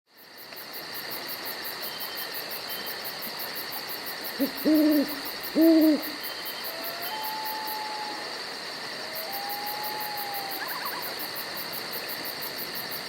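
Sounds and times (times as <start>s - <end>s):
night hiss: 0.2s - 13.0s
owl hooting: 4.4s - 8.4s, 9.0s - 11.3s.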